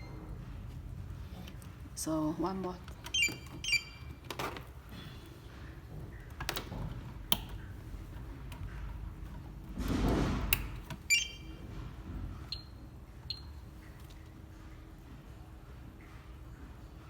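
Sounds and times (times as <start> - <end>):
cable handling clicks and rustling: 1.2 - 12.6.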